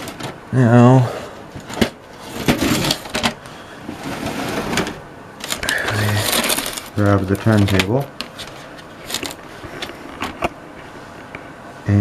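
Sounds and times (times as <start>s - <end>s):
plastic parts clicking and knocking: 0.0s - 0.4s, 1.6s - 3.4s, 4.7s - 10.6s
rustling: 1.3s - 11.2s.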